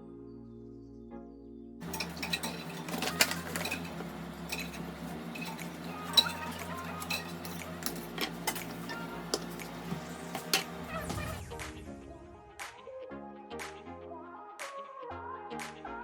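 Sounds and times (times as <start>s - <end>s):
dishes and utensils clattering: 1.8s - 11.4s.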